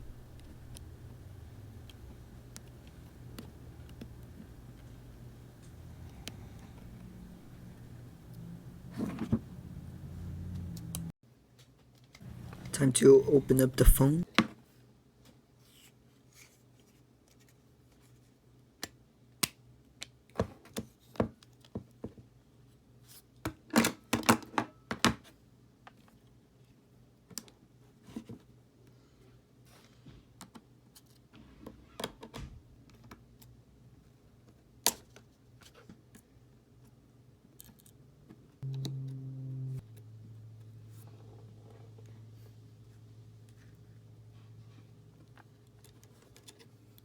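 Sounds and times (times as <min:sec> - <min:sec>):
steady hum: 0:00.0 - 0:11.1, 0:38.6 - 0:44.9.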